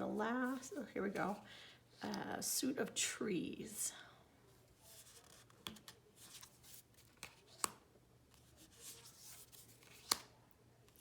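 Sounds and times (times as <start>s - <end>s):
cards sliding and rustling: 4.8s - 10.3s
card snaps: 7.1s - 7.8s, 9.8s - 10.3s.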